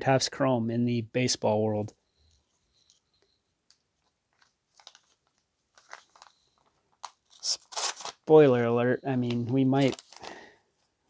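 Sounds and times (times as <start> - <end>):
plastic packaging rustling: 2.3 - 10.8.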